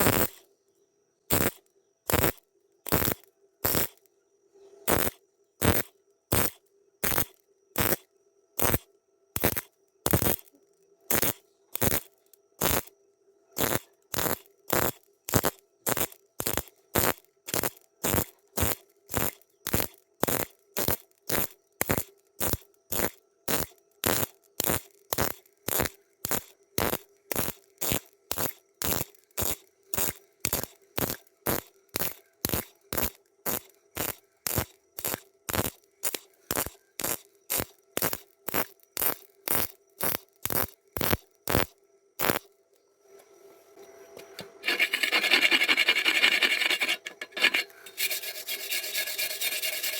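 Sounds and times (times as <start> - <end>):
welder crackling bursts: 0.0 - 0.4, 2.9 - 4.0, 33.5 - 42.4, 44.6 - 49.9
welding machine hum: 30.0 - 42.4, 44.4 - 49.9.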